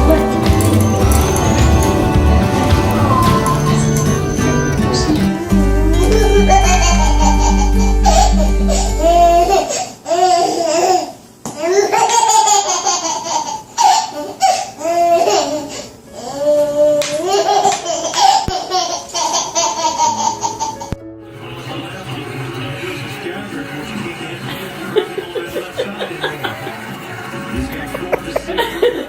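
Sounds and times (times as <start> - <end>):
background music with steady beat: 0.0 - 9.6, 20.8 - 29.0
baby laughing: 3.4 - 21.0, 22.2 - 29.0.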